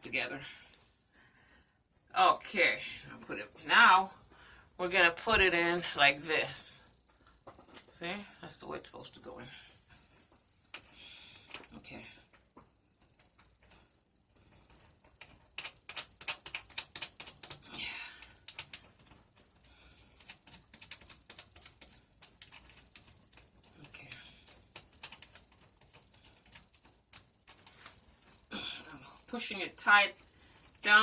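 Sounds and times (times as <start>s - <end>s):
breathy murmur: 28.4s - 29.2s.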